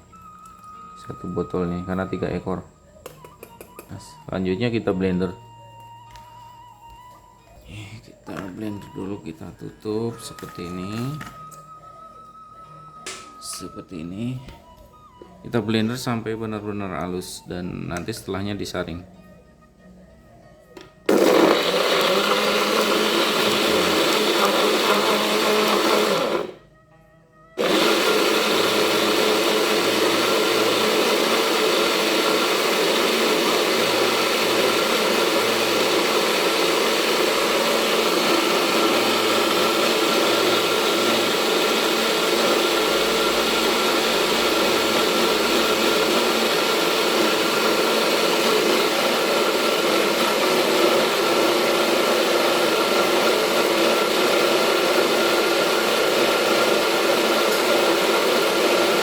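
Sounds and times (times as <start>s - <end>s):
electric blender running: 21.1s - 26.6s, 27.6s - 59.0s.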